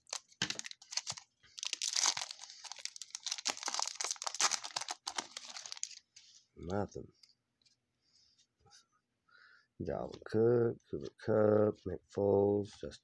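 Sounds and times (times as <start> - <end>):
plastic foil wrapper tearing and crinkling: 0.0 - 6.0.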